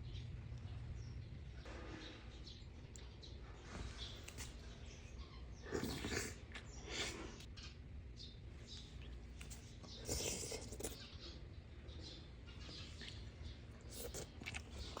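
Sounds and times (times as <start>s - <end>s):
chewing with wet crunches: 12.6s - 15.0s.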